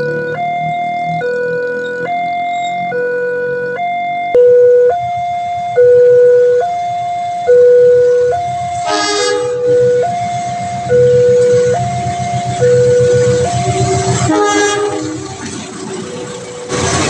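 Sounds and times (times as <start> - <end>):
two-tone warning siren: 0.0 - 17.0
short horn blast: 8.8 - 9.7, 14.1 - 15.4.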